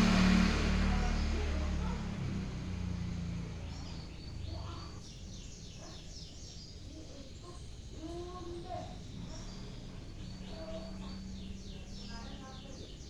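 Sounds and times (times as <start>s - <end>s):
low rumble: 0.0s - 3.4s
songbirds chirping: 0.0s - 13.0s.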